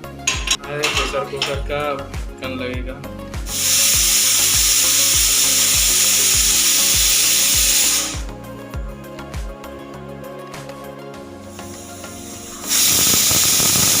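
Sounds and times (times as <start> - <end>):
background music with steady beat: 0.0 - 14.0
pressure cooker whistle hissing: 3.5 - 8.3, 11.6 - 14.0.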